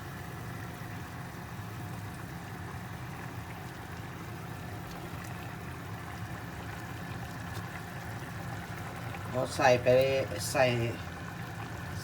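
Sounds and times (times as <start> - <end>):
broth boiling in a pot: 0.0 - 12.0.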